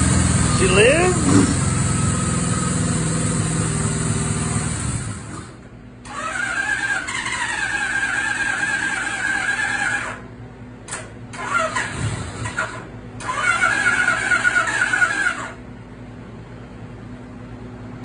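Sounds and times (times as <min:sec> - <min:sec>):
motorcycle engine running unevenly: 0:00.0 - 0:05.6
electric starter cranking: 0:03.0 - 0:10.2, 0:10.9 - 0:15.6.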